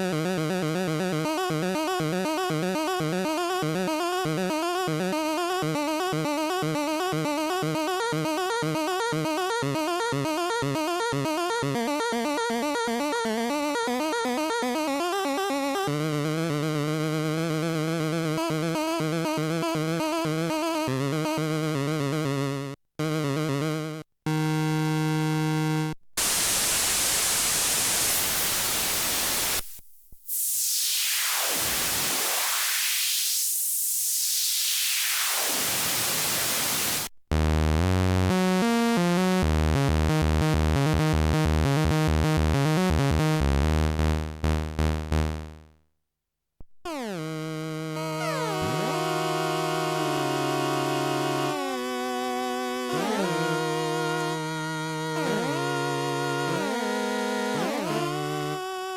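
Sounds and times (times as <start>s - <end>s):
filtered synth hiss sweep: 26.2s - 37.1s
sequenced synth pattern with bass: 36.7s - 45.6s
synthesizer tones: 48.0s - 51.9s.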